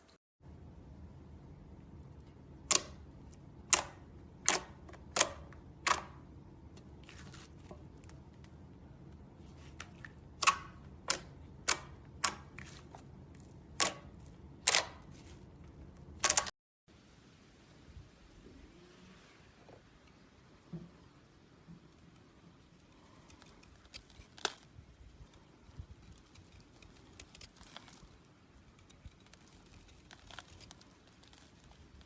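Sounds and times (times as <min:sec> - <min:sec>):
sharp crisp clicks: 0:02.6 - 0:06.9, 0:10.4 - 0:12.8, 0:16.2 - 0:16.5.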